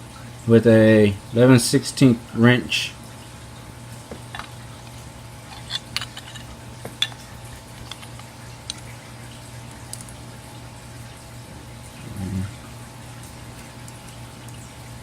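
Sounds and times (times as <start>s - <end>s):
steady low hum: 0.0s - 15.0s
wrench clinking on metal: 5.5s - 7.2s.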